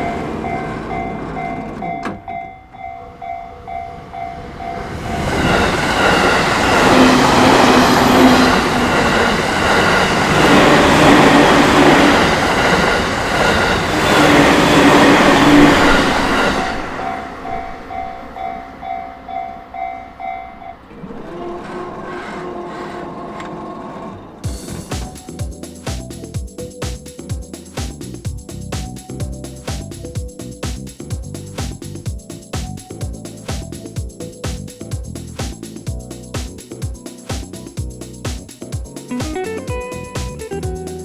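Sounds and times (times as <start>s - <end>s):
level-crossing warning bell: 0.0s - 21.9s
train passing: 0.0s - 41.0s.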